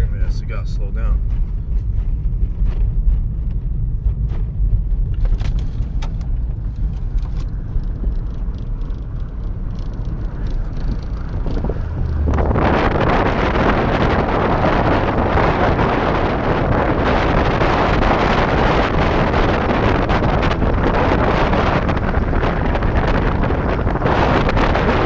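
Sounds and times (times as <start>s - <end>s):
car driving rumble from inside: 0.0s - 25.0s
wind noise on microphone: 0.0s - 25.0s.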